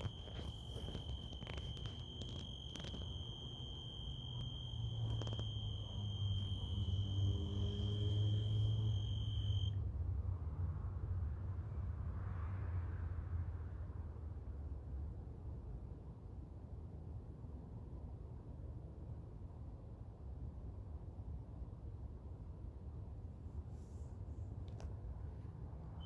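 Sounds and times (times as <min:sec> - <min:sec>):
high-pitched insect trill: 0:00.0 - 0:09.8.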